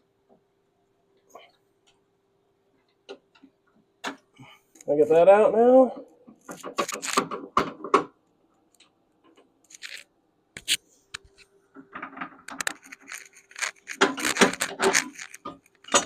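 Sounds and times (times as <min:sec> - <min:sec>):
hand tools clinking and scraping: 0:11.9 - 0:16.0.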